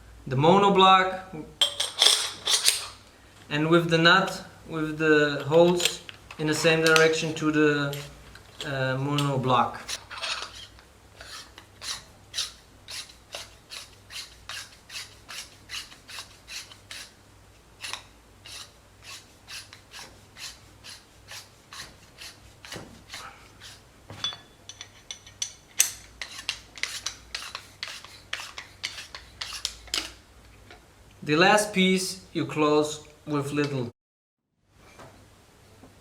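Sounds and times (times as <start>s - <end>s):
metal-on-metal rasping strokes: 5.7s - 17.2s, 17.8s - 23.8s, 24.7s - 30.2s
metallic ring and clink: 24.2s - 26.0s.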